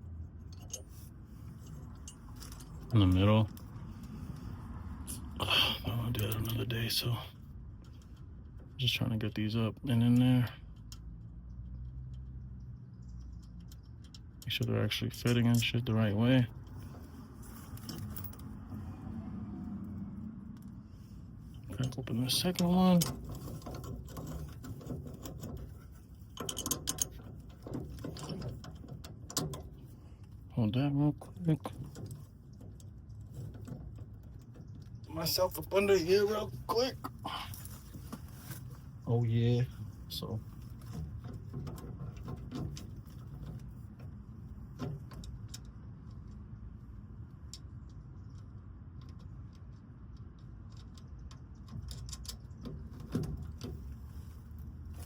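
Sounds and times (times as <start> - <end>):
metal hardware and tools rattling: 0.5 - 4.2, 13.0 - 18.9, 21.5 - 46.2
metal parts clinking: 17.4 - 18.6, 21.6 - 29.9.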